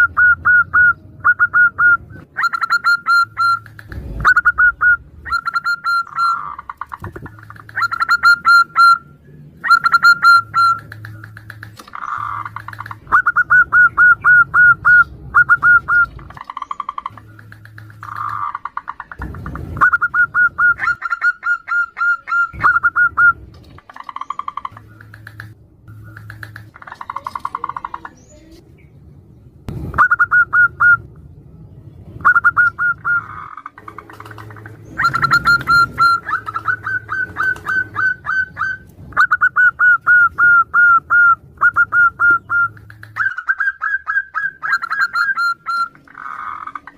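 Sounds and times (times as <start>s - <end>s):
doves cooing: 0.0s - 28.6s, 32.2s - 46.9s.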